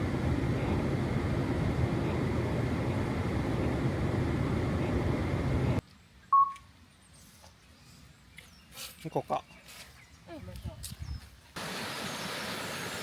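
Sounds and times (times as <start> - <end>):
low rumbling noise: 0.0 - 5.8
high-pitched tone: 6.4 - 6.6.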